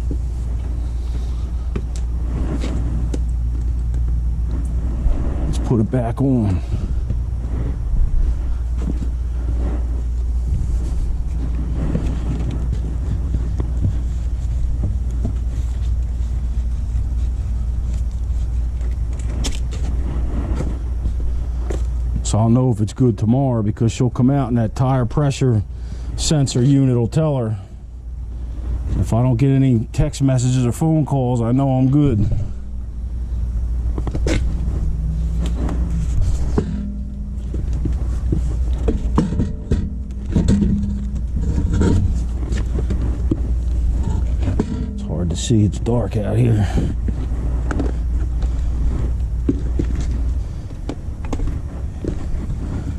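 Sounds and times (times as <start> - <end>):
steady low rumble: 0.0 - 52.9
metal clinks and knocks: 35.4 - 45.5.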